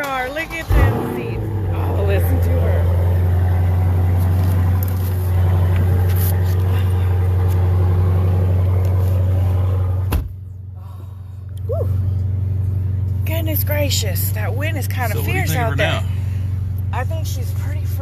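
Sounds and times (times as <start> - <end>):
car engine idling: 0.0 - 18.0
car door thumping shut: 10.0 - 10.4.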